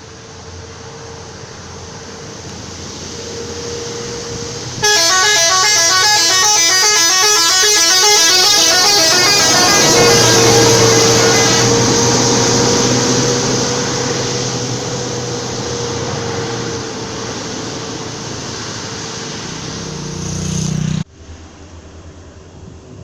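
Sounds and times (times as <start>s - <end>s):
bus engine and road noise: 0.0s - 23.0s
bus horn notes: 4.8s - 13.9s.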